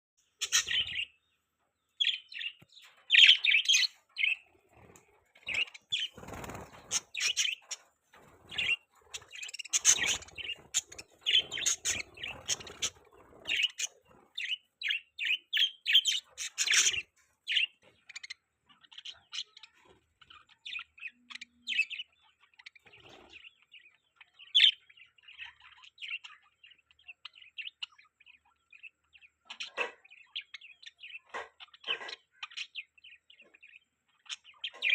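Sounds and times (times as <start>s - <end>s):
budgerigars chirping and chattering: 0.2s - 34.9s
wing flutters: 3.8s - 14.6s.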